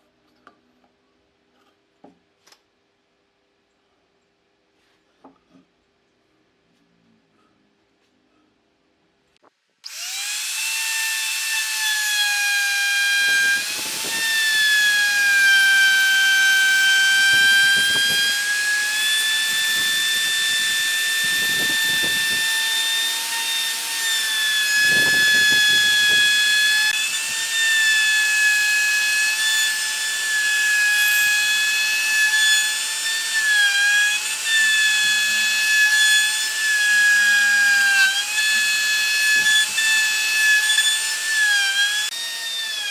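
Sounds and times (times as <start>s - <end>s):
power tool whining: 9.8s - 42.9s
rough cutting noise: 13.0s - 28.2s.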